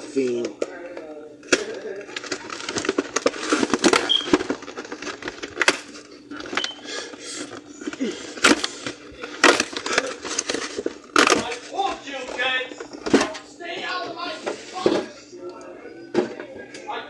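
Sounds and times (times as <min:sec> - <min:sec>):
drink containers clicking and knocking: 0:00.2 - 0:13.4.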